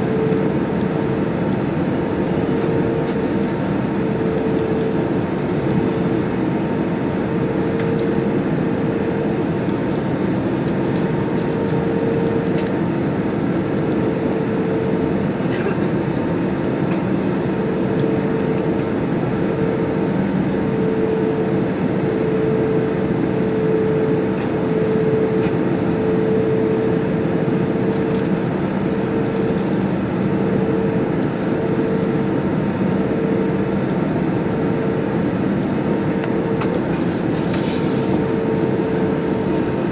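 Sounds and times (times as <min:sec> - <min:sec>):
steady low hum: 0:00.0 - 0:07.2, 0:34.7 - 0:39.9
jet engines droning: 0:00.0 - 0:39.9
airflow rush: 0:02.9 - 0:06.8, 0:36.8 - 0:39.9.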